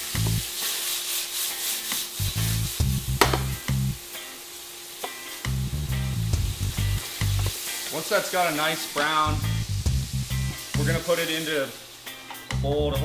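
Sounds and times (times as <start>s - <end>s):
background music with bass: 0.0s - 0.5s, 2.2s - 4.1s, 5.4s - 7.6s, 9.0s - 11.1s, 12.1s - 13.0s
stirring and scraping wok: 0.0s - 3.6s
steak sizzling in a wok: 0.0s - 13.0s
sharp knock: 3.2s - 3.5s.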